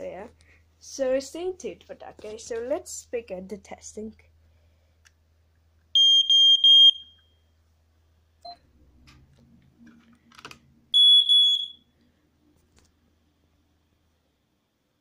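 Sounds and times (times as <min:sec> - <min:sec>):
smoke detector alarm beep: 0:06.0 - 0:07.4, 0:11.0 - 0:11.9.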